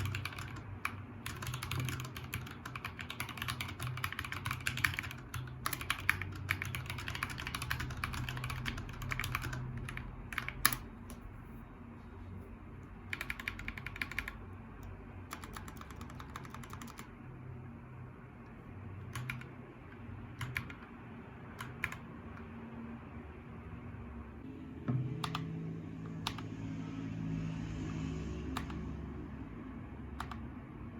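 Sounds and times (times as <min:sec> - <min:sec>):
mechanical keyboard typing: 0:00.0 - 0:11.2, 0:13.1 - 0:17.2, 0:19.0 - 0:20.9, 0:21.5 - 0:22.5, 0:25.2 - 0:25.5, 0:30.2 - 0:30.5
steady low hum: 0:00.0 - 0:30.9.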